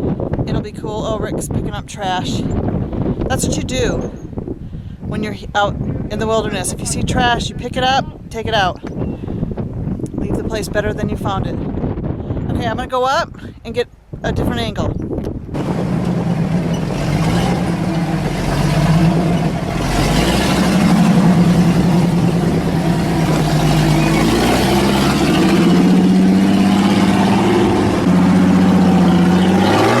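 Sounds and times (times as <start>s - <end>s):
engine revving up and down: 15.6s - 30.0s.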